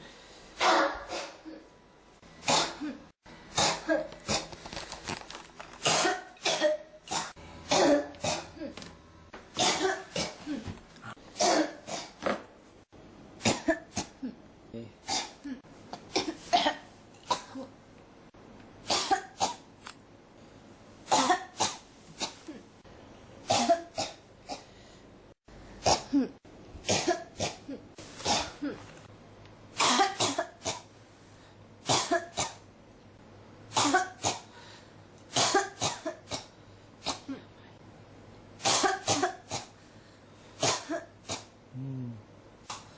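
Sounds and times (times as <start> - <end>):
person coughing: 2.4 - 4.5, 5.8 - 8.9, 9.6 - 12.3, 13.4 - 14.4, 15.0 - 17.7, 18.9 - 19.6, 21.1 - 22.6, 23.5 - 24.7, 25.8 - 28.9, 29.8 - 30.9, 31.9 - 32.6, 33.8 - 34.5, 35.3 - 37.6, 38.6 - 39.7, 40.6 - 41.5.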